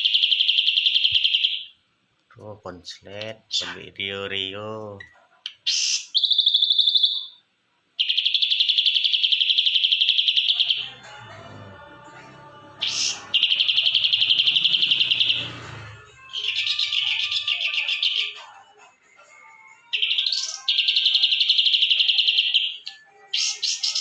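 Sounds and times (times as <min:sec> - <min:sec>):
bird buzzy high chatters: 0:12.8 - 0:15.6.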